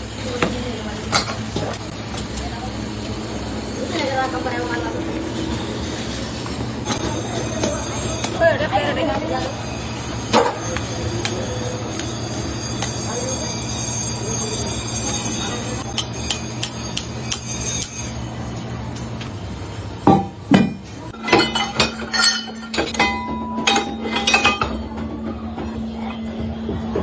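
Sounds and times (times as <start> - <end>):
bells ringing: 6.8 - 18.3.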